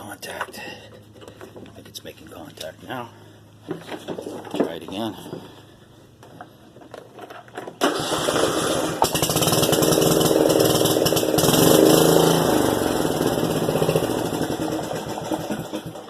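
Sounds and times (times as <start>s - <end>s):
mower engine cranking on starter: 6.9s - 16.0s
mower engine running: 7.3s - 16.0s.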